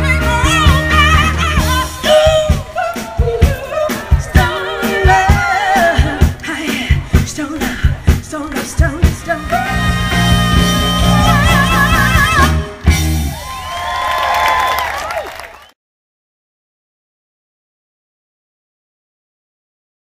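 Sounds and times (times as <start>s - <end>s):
live band playing: 0.0s - 15.5s
drums: 0.0s - 15.7s
crowd cheering and whooping: 9.0s - 15.8s.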